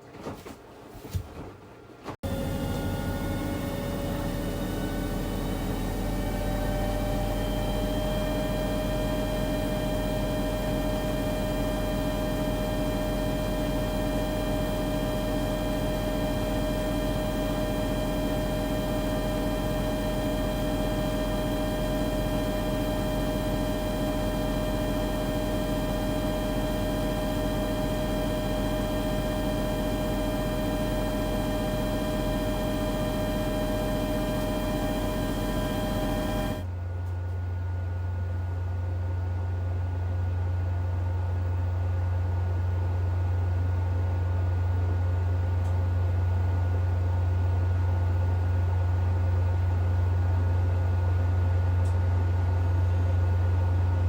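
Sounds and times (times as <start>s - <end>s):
washer-dryer motor whine: 0.1s - 37.1s
low hum: 2.2s - 36.7s.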